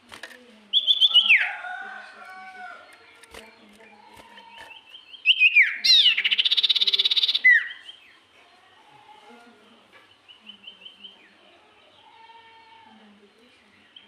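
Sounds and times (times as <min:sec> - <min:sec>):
songbird whistles and trill: 0:00.7 - 0:01.5, 0:04.7 - 0:08.1.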